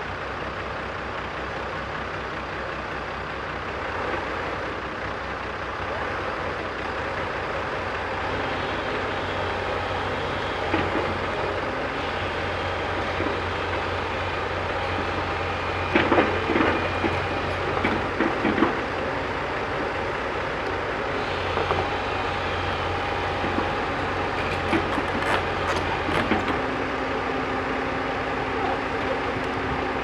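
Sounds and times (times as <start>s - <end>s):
diesel engine running: 0.0s - 30.0s
clanking and rattling: 23.3s - 26.7s.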